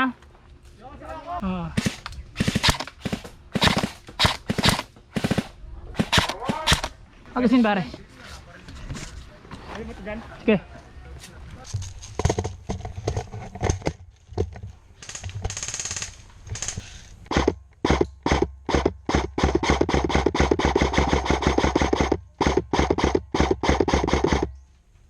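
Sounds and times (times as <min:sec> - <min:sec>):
airsoft guns firing: 0:01.7 - 0:07.0, 0:15.1 - 0:24.5.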